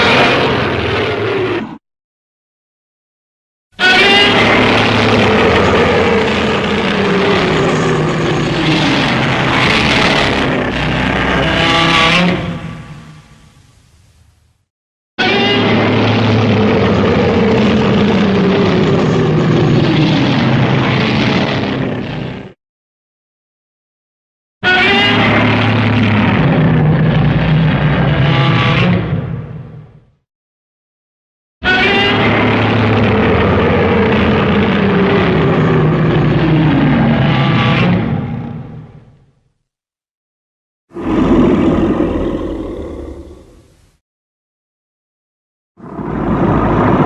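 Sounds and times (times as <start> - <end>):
harsh monster cry: 3.8 - 12.6, 15.2 - 20.0, 31.6 - 38.0, 40.9 - 43.7.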